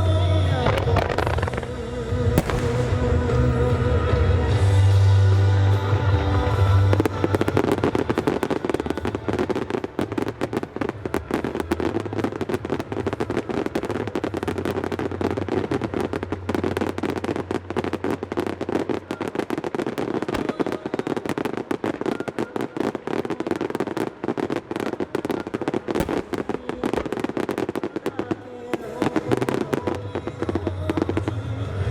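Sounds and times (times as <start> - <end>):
music with heavy bass: 0.0 - 10.3
firework cracks and bangs: 0.6 - 5.2, 5.8 - 31.9.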